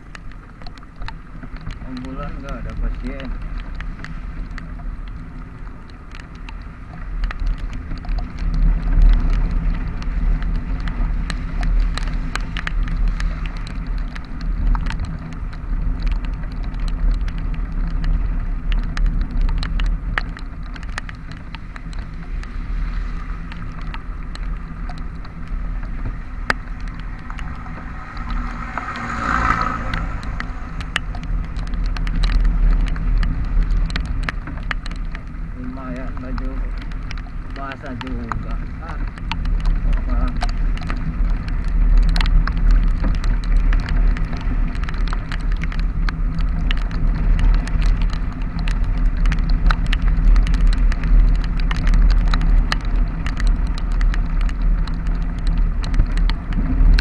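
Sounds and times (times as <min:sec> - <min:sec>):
rain clicks: 0:00.0 - 0:57.0
road and wind noise: 0:00.0 - 0:57.0
vehicle engine hum: 0:00.0 - 0:57.0.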